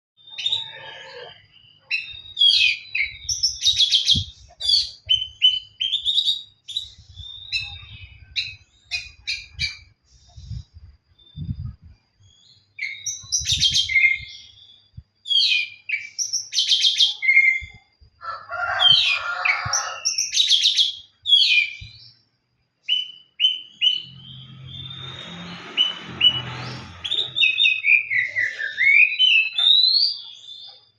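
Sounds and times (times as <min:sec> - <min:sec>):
low rumbling noise: 0:06.8 - 0:12.3, 0:23.7 - 0:27.7
bird singing whistled phrases: 0:12.3 - 0:17.9, 0:20.0 - 0:22.2, 0:22.8 - 0:25.1, 0:27.0 - 0:30.8.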